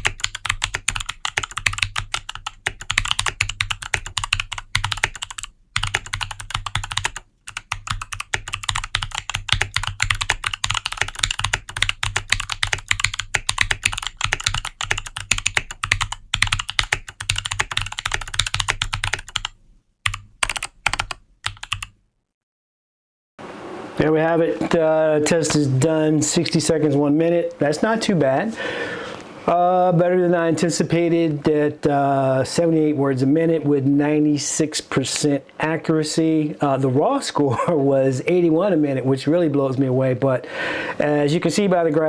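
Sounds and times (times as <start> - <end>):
clicky keyboard typing: 0.0 - 22.0.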